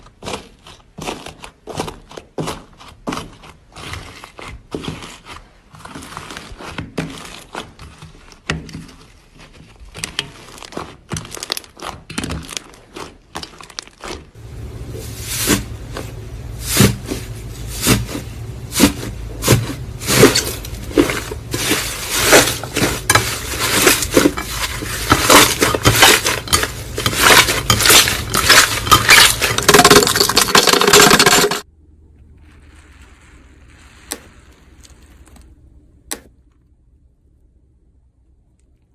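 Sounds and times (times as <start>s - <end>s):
slime clicking and crackling: 0.0s - 14.4s
low hum: 14.4s - 38.2s.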